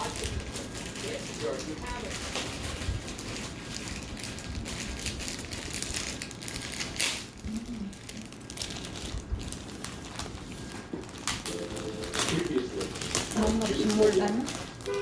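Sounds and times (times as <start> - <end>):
crinkling handling noise: 0.0 - 15.0.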